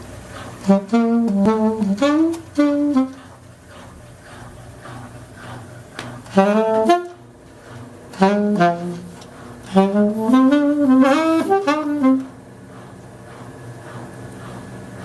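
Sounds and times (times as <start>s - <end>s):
washing machine humming: 0.0s - 15.0s
saxophone playing blues: 0.1s - 15.0s.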